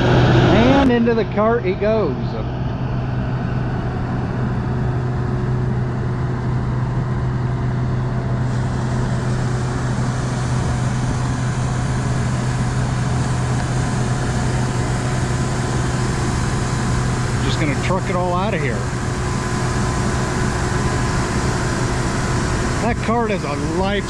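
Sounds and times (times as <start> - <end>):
farm machinery engines droning: 0.0 - 24.0
grain pouring hissing rush: 8.5 - 24.0.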